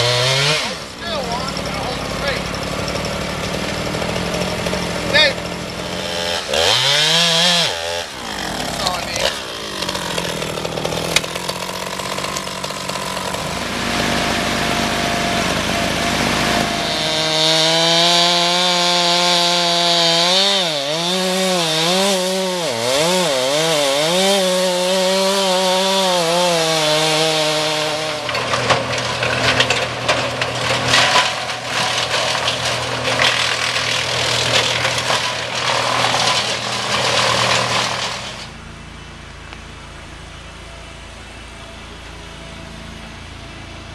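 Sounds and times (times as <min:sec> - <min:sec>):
chainsaw cutting through log: 0:00.0 - 0:38.6.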